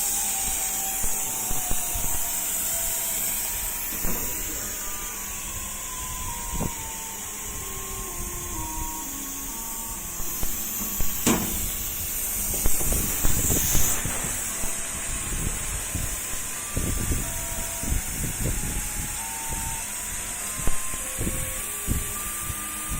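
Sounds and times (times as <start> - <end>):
laser cutter motors whining: 0.0 - 22.9
steady high hiss: 0.0 - 22.9
knocks: 10.8 - 11.7.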